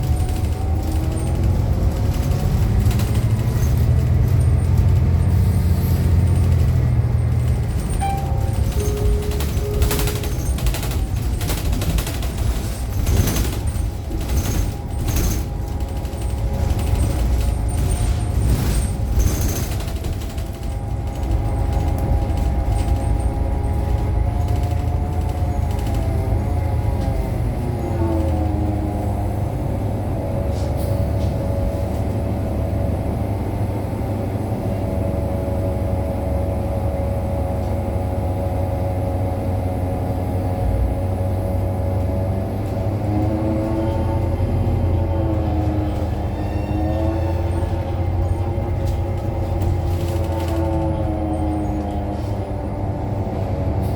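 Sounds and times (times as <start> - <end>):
rattling noise: 0.0 - 29.1, 42.6 - 52.5
bus engine rumble: 0.0 - 53.9.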